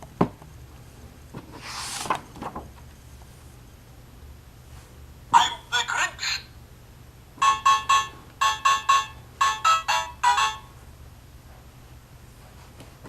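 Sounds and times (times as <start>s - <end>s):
electronic beeping tune: 7.4s - 10.7s.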